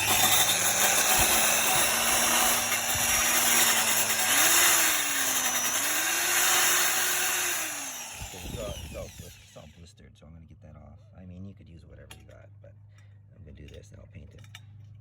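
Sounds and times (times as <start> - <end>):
wire brush scrubbing metal: 0.0 - 9.6
power drill motor hum: 0.0 - 9.7.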